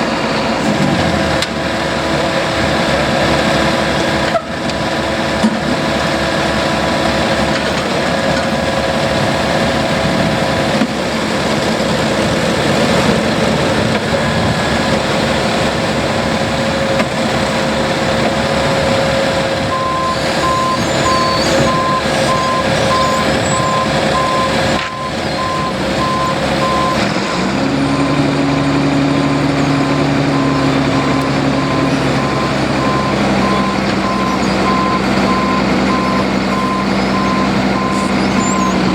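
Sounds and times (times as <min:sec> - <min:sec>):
paving equipment engines running: 0:00.0 - 0:38.9
backup alarm beeping: 0:19.6 - 0:27.0, 0:30.2 - 0:38.9.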